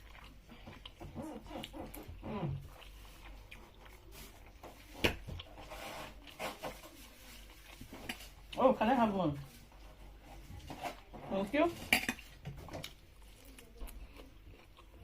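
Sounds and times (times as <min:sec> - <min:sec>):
cutlery clatter: 0:11.7 - 0:12.9
cutlery clinking on dishes: 0:11.8 - 0:12.9.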